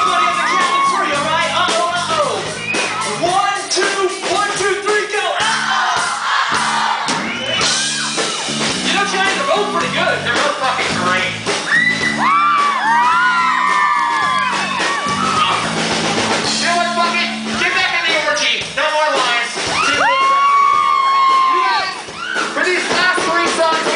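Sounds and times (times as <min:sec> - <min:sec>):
crowd shouting and whooping: 0:00.0 - 0:03.4, 0:05.2 - 0:09.8, 0:11.6 - 0:15.9, 0:19.6 - 0:23.4
live music with singing: 0:00.0 - 0:23.9.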